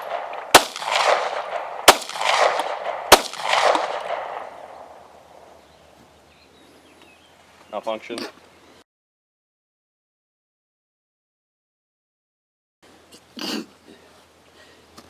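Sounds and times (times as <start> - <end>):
pistol shots with ringing echo: 0.0 - 5.4.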